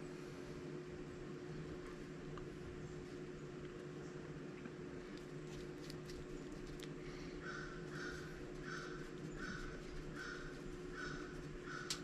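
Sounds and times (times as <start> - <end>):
bird calling: 7.2 - 12.0.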